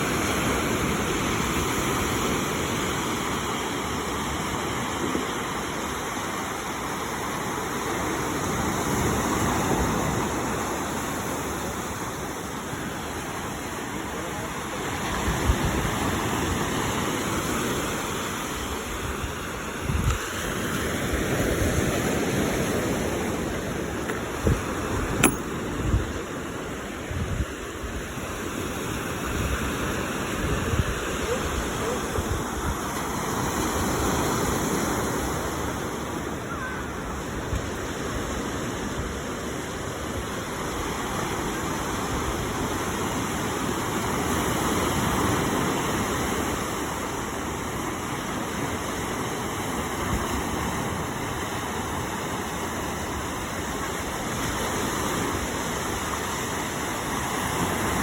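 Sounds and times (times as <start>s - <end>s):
rushing wind: 0.0s - 58.0s
water noise: 0.0s - 58.0s
wind buffeting microphone: 21.0s - 28.3s.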